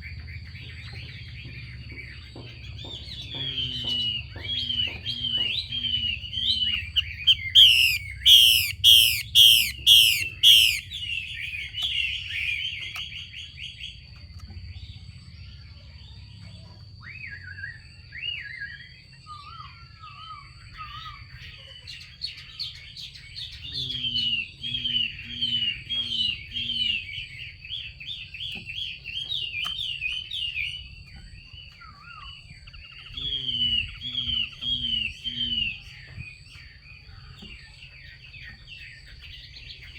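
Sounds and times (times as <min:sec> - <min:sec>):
bird rapid repeated calls: 0:03.5 - 0:11.1.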